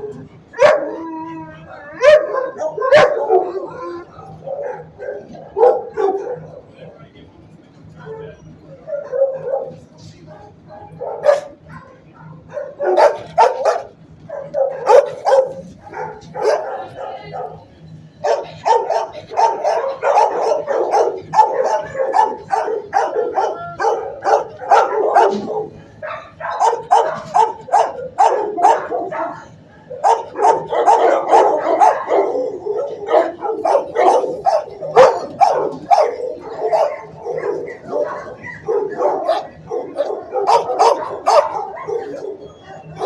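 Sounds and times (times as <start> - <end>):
dogs barking: 0.0 - 7.0, 7.8 - 43.0.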